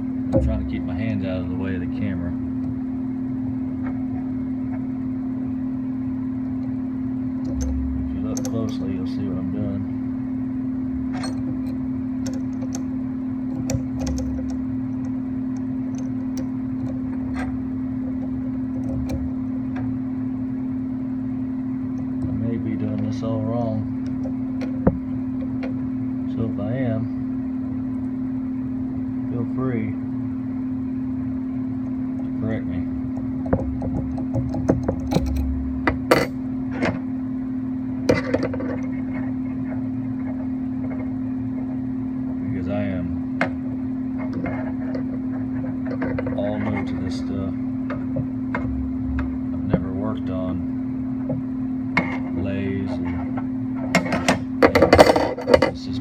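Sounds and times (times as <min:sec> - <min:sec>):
steady hum: 0:00.0 - 0:56.0
metallic clicks and taps: 0:07.4 - 0:08.9, 0:11.2 - 0:12.9, 0:13.5 - 0:17.5, 0:18.2 - 0:19.9, 0:33.1 - 0:36.4.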